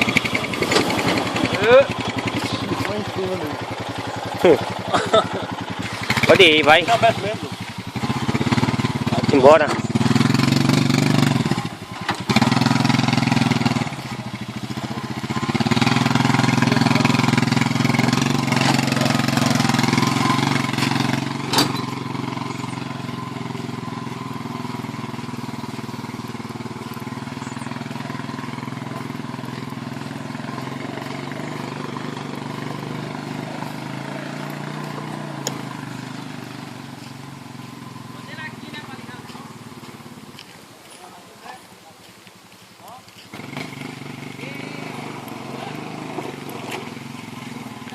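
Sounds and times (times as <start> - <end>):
atv engine running under throttle: 0.0 - 41.1, 42.1 - 47.9.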